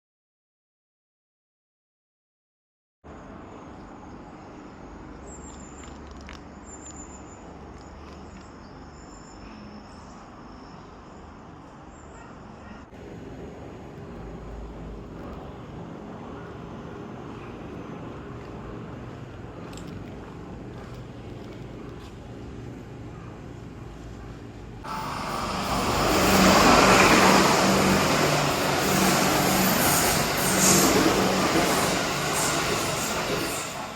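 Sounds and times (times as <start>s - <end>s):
electric train passing: 24.8s - 33.9s.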